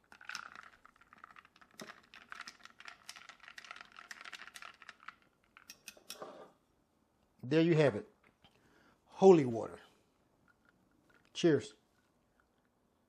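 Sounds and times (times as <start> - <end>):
spoon stirring ice in a glass: 0.0 - 6.0.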